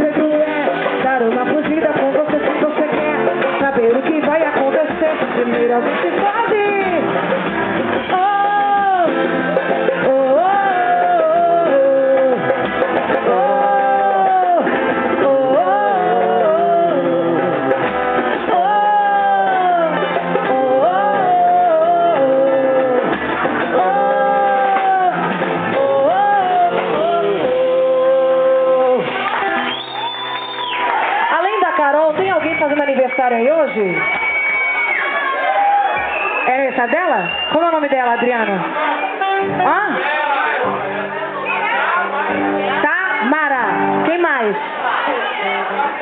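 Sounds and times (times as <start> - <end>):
person singing: 0.0 - 7.0, 8.0 - 17.8, 18.4 - 29.2
percussion band playing: 0.0 - 46.0.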